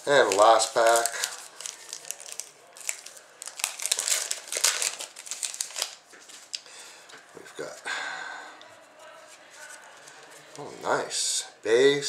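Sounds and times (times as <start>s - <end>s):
wrapper tearing and crinkling: 0.0s - 6.6s.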